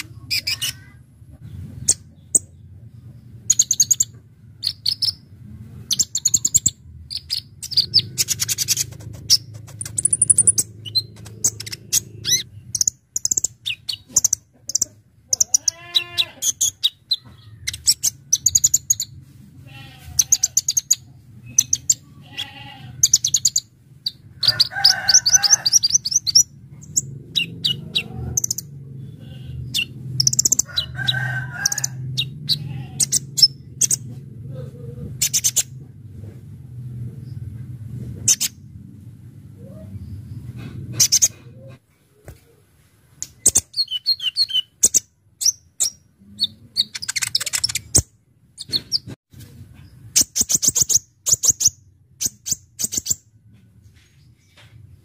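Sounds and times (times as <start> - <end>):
sunbird chirping and trilling: 0.0 - 1.0, 3.4 - 5.3, 5.9 - 19.1, 20.2 - 34.0, 43.4 - 49.0
low background hum: 0.0 - 55.0.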